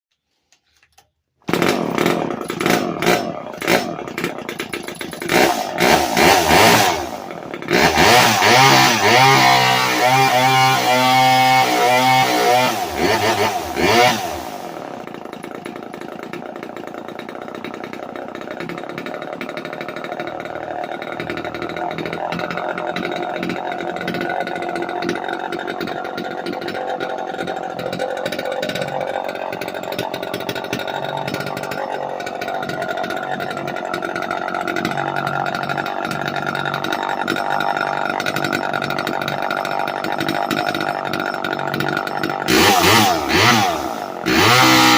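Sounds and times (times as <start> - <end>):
chainsaw engine running: 1.4 - 44.9.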